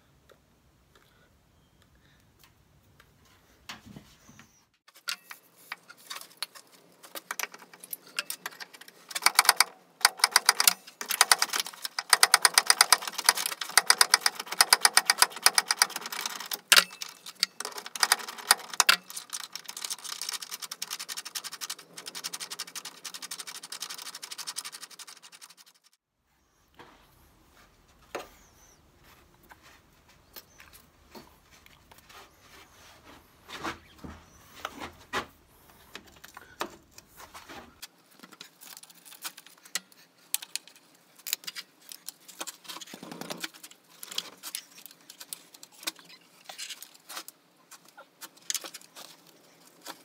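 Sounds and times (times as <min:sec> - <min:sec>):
sharp clicks and rattling: 0:05.0 - 0:26.0.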